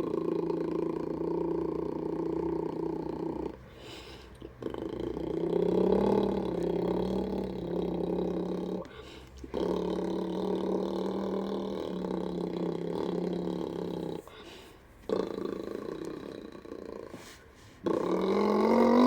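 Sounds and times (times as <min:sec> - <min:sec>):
boy imitating engine with mouth: 0:00.0 - 0:03.7, 0:04.3 - 0:14.4.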